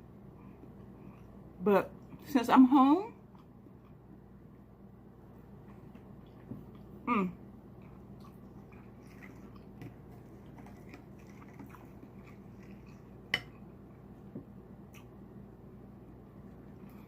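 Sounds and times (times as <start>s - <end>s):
person chewing and smacking: 5.4s - 7.0s, 7.7s - 14.0s.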